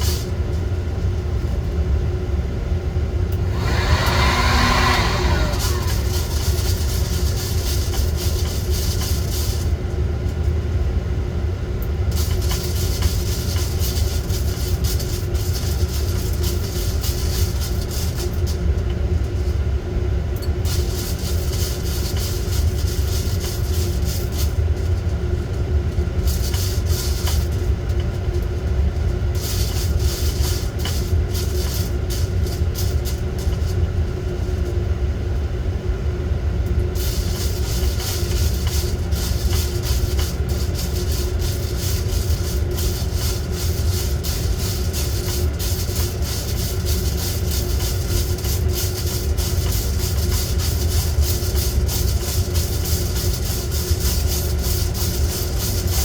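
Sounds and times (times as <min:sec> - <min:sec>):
coffee roaster rumble: 0:00.0 - 0:56.0
fast crackling ticks: 0:37.0 - 0:56.0.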